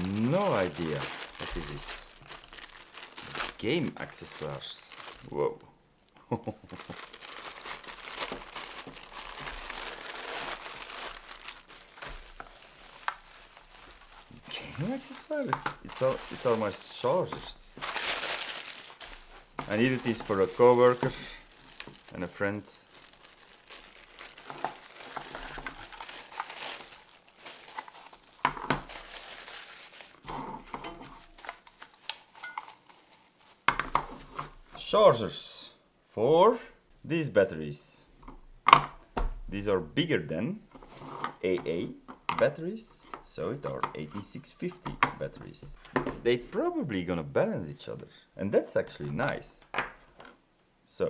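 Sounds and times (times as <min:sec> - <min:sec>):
plastic packaging crinkling: 0:00.0 - 0:05.5, 0:06.6 - 0:34.7.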